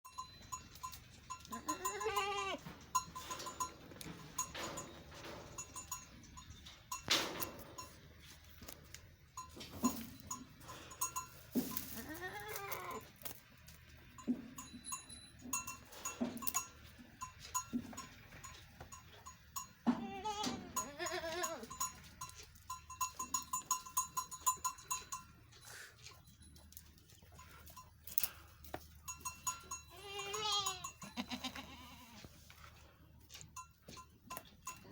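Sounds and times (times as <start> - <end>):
small bell clinking: 0.0 - 8.2, 9.3 - 12.0, 14.0 - 31.4, 33.3 - 34.9
goats bleating: 1.5 - 2.7, 12.0 - 13.1, 19.9 - 21.7, 29.9 - 32.3.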